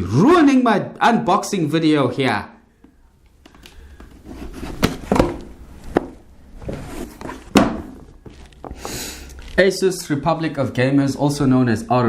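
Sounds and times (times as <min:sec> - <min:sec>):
plastic wrapping rustling: 0:03.4 - 0:09.6.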